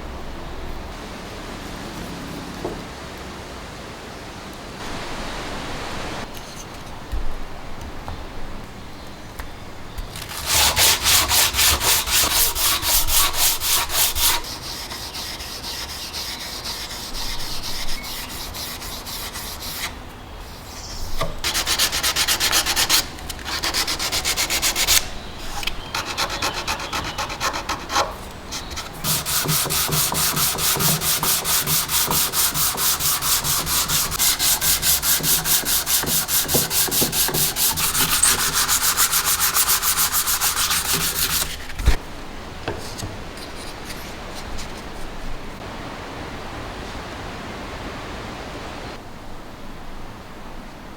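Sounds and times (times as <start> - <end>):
hand sanding with sandpaper: 10.1 - 42.0.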